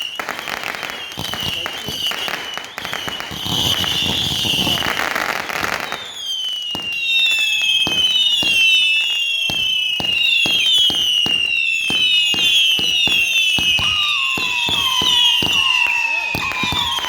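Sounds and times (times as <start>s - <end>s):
firework whistles: 0.0s - 17.0s
firework bangs: 0.1s - 17.0s
fireworks crackling hiss: 11.0s - 17.0s.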